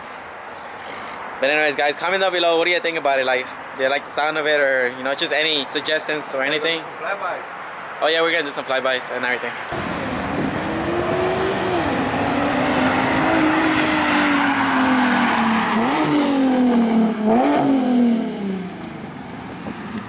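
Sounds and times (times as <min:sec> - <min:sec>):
sports car driving past: 0:09.7 - 0:19.8.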